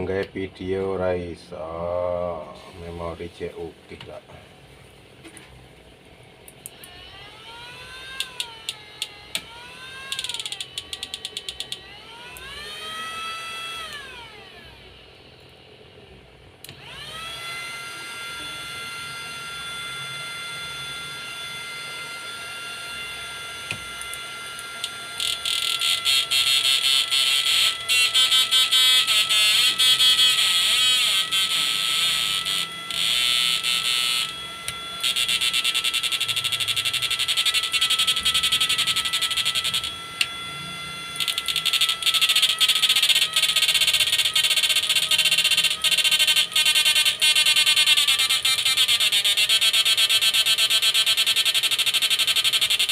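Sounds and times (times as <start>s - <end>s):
fast electronic clicking: 10.1s - 11.8s, 35.0s - 40.3s, 41.2s - 52.9s
wavering siren-like electronic tones: 16.8s - 52.9s
steady high electronic tone: 18.1s - 52.9s.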